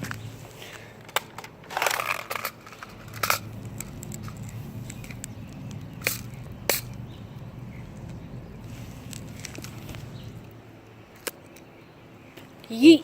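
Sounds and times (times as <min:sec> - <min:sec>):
short scraping rustle: 0:08.6 - 0:10.4.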